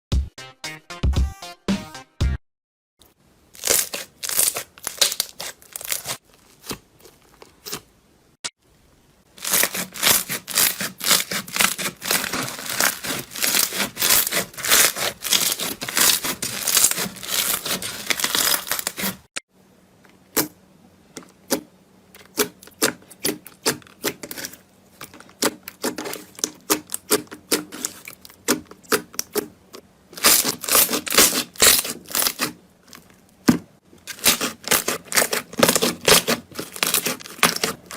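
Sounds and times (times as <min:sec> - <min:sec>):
slime squeezed by hand crackling: 0:03.6 - 0:07.8.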